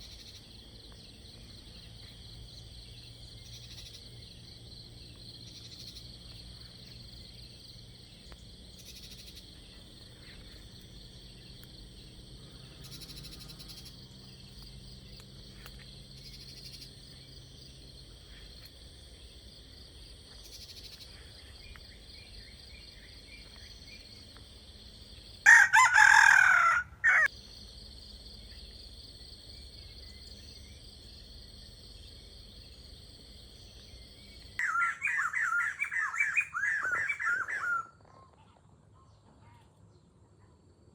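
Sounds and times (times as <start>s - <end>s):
insects chorus: 0.0s - 38.0s
rooster crowing: 25.4s - 27.3s.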